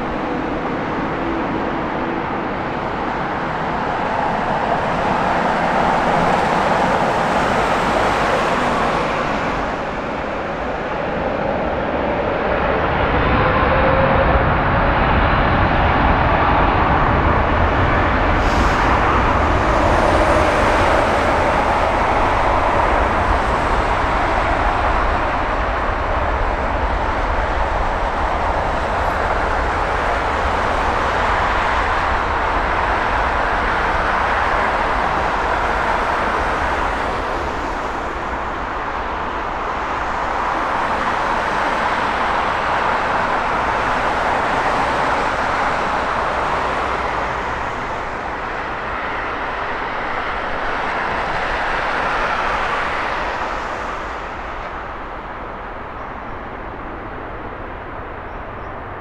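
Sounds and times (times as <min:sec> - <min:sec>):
jet engine roar: 0:00.0 - 0:59.0.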